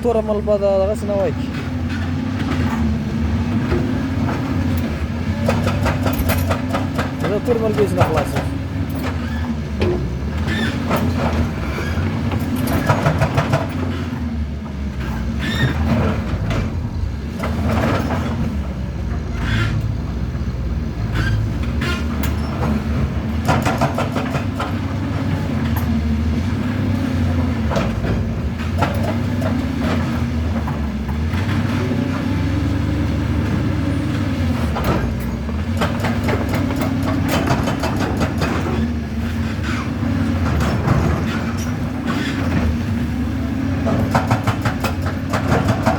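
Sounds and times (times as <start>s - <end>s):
excavator diesel engine working: 0.0s - 45.9s
knocks and clanks: 1.4s - 20.1s, 21.0s - 32.4s, 33.4s - 45.9s.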